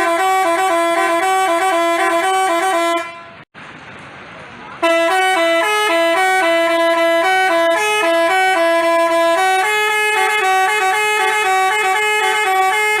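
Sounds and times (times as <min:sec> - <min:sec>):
musical horn playing a tune: 0:00.0 - 0:03.4, 0:04.8 - 0:13.0.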